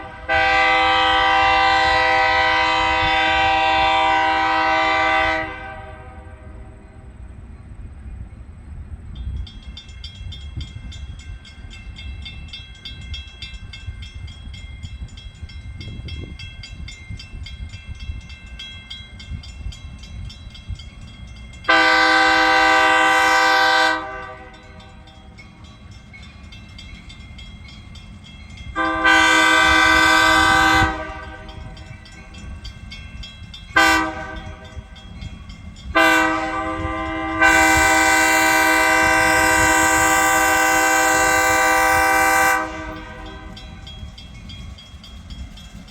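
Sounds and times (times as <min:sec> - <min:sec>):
locomotive air horn blasts: 0:00.0 - 0:06.7, 0:21.7 - 0:24.9, 0:28.7 - 0:31.9, 0:33.7 - 0:35.0, 0:35.9 - 0:43.9.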